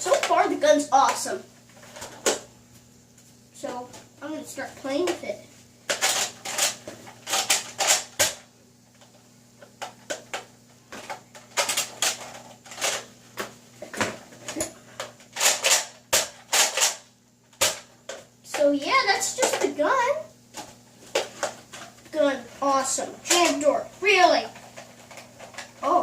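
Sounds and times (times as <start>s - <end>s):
sharp plastic clicks and clacks: 15.4s - 17.0s.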